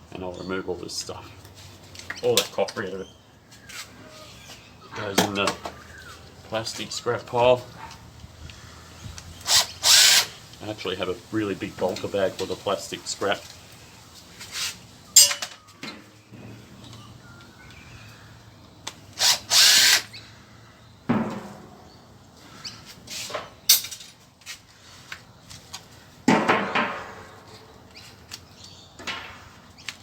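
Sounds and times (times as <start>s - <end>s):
power tool burst: 9.4s - 10.4s, 19.2s - 20.1s
metal and plastic parts clattering: 23.7s - 24.2s.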